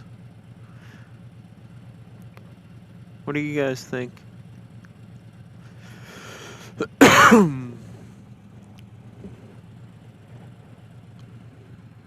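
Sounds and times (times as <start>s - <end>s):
motorcycle engine idling: 0.0s - 12.0s
man groaning: 6.6s - 7.9s.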